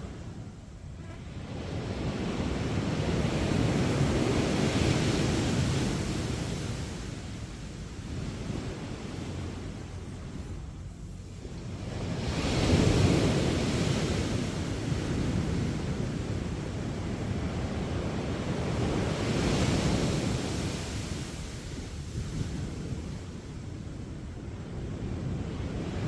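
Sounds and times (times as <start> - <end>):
sea waves breaking: 1.2 - 21.6.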